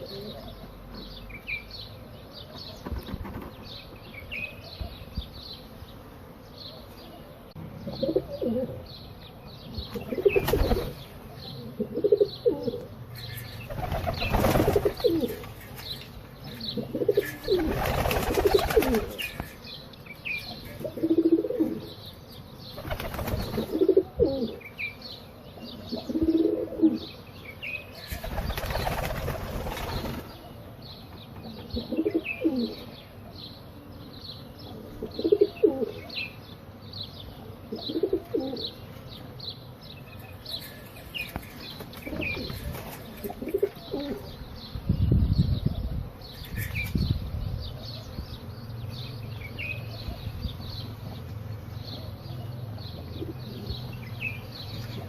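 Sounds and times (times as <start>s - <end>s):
pigeons cooing: 0.0s - 0.9s, 6.6s - 9.0s, 9.6s - 24.9s, 25.5s - 39.6s, 40.2s - 55.0s
small birds chirping faintly: 0.0s - 55.0s
wings flapping: 10.2s - 11.0s, 13.6s - 15.8s, 17.1s - 19.5s, 22.8s - 23.9s, 28.1s - 30.4s.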